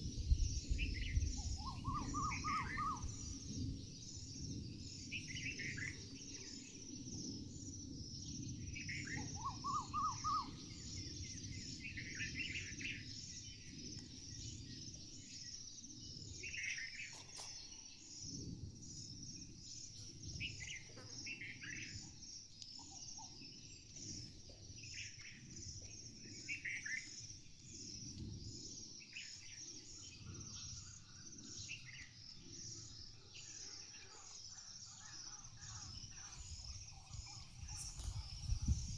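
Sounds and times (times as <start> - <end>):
high-pitched insect chorus: 0.0 - 38.9
wild birds calling: 1.4 - 4.2, 8.8 - 13.7, 29.2 - 38.4.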